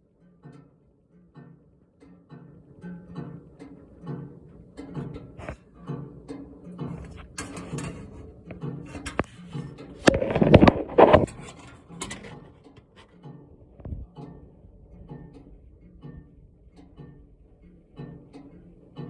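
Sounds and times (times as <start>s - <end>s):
scraping and rustling: 4.9s - 5.7s, 6.8s - 14.0s.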